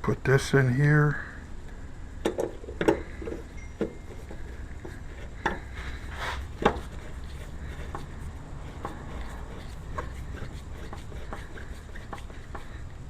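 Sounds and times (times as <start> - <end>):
hard parts clicking and knocking: 2.2 - 5.7, 6.6 - 6.9.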